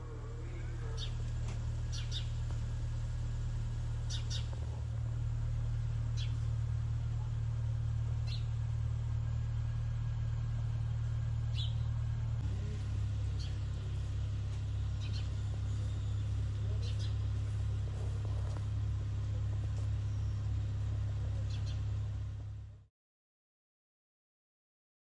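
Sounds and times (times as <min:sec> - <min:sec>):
car rumble: 0:00.0 - 0:22.9
small bird chirping: 0:00.9 - 0:02.5, 0:04.0 - 0:04.8, 0:06.0 - 0:06.6, 0:08.2 - 0:08.6, 0:11.5 - 0:11.9, 0:13.2 - 0:18.8, 0:19.5 - 0:22.2.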